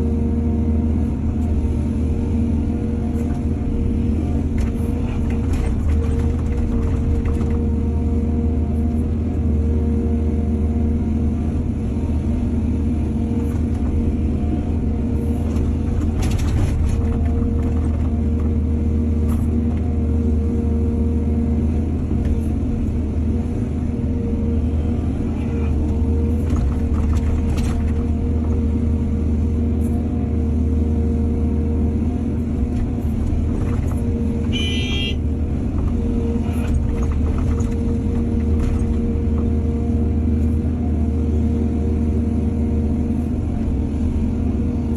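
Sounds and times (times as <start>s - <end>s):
diesel excavator engine: 0.0s - 44.9s.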